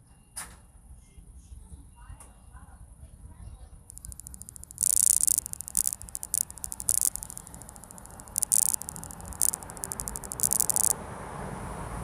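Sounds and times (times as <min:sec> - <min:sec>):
camera module buzzing and crackling: 0:03.9 - 0:11.0.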